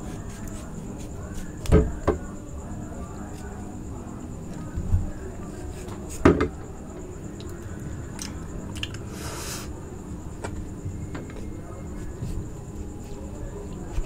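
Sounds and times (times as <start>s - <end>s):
wet chewing with small clicks: 8.2s - 9.0s.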